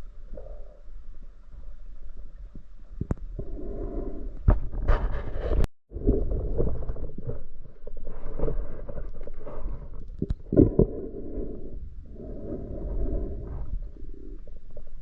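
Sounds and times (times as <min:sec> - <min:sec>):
muffled underwater water rumble: 0:00.0 - 0:15.0.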